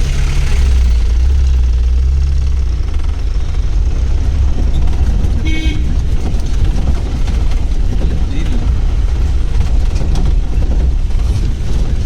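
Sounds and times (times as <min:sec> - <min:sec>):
jeep engine rumbling: 0:00.0 - 0:12.0
short high horn toot: 0:05.4 - 0:05.9.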